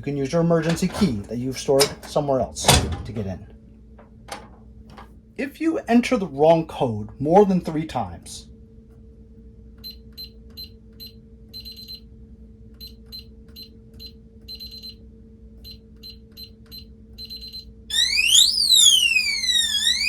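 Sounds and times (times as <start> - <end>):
electronic alarm siren: 17.9 - 20.0.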